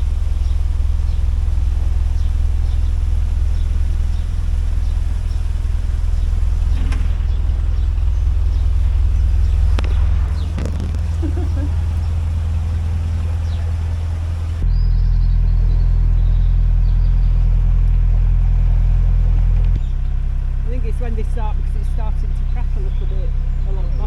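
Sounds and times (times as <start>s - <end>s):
diesel engine running: 0.0s - 24.0s
sharp clicks: 6.7s - 14.6s.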